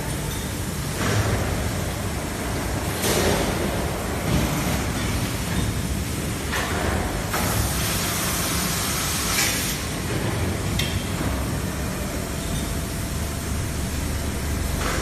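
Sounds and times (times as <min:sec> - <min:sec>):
low mechanical drone: 0:10.0 - 0:15.0.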